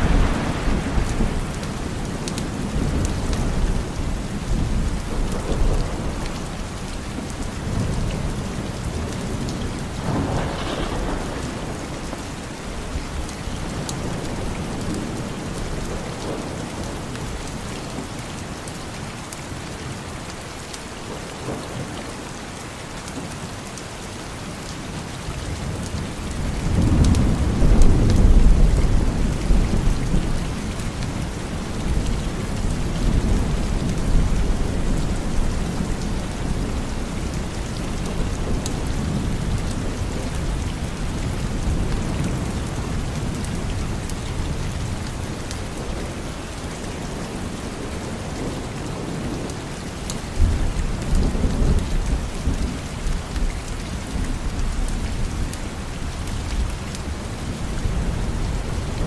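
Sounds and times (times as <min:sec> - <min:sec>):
thunder rumbling: 0:00.0 - 0:17.2
steady rain: 0:00.0 - 0:59.0.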